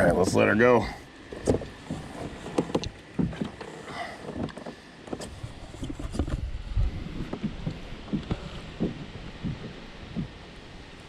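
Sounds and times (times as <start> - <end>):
knocks in a plastic kayak: 1.3 - 10.4
low rumble: 5.3 - 11.0
wind buffeting microphone: 5.3 - 11.0.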